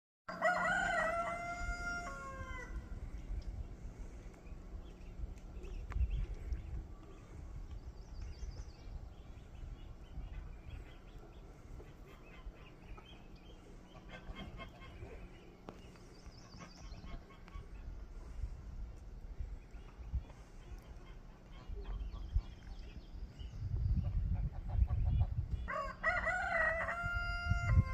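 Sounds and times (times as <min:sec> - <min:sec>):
rooster crowing: 0:00.3 - 0:02.9, 0:25.7 - 0:27.9
low rumble: 0:01.6 - 0:25.7
small birds chirping: 0:03.0 - 0:25.8.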